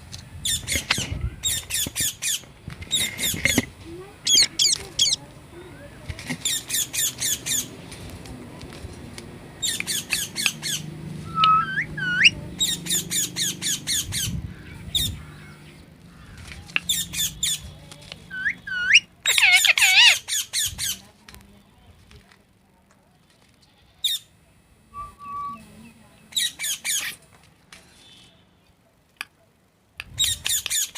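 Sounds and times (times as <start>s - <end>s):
parrot screeching: 4.3s - 5.2s, 9.6s - 14.3s, 18.3s - 20.6s
parrot harsh squawk: 9.6s - 14.3s, 18.3s - 20.6s
parrot rising whistles: 11.2s - 12.4s, 25.0s - 25.6s.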